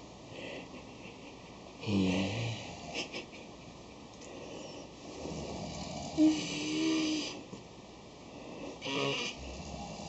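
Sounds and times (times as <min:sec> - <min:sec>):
child imitating snoring: 0:05.2 - 0:07.4, 0:08.8 - 0:10.0.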